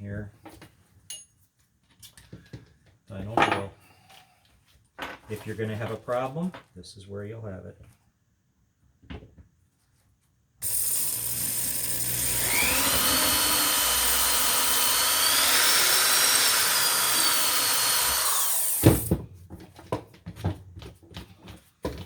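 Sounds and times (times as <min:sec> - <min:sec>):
electric drill whining: 0:10.6 - 0:19.1.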